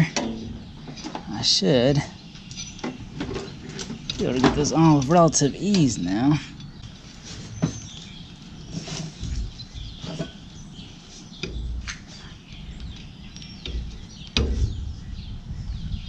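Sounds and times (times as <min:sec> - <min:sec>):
low thumps: 0:00.0 - 0:01.3, 0:11.4 - 0:12.1, 0:13.6 - 0:16.0
birds chirping: 0:00.0 - 0:16.0.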